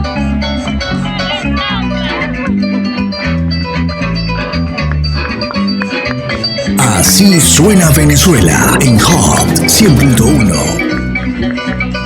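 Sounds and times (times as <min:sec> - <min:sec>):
loud bass line: 0:06.8 - 0:11.4.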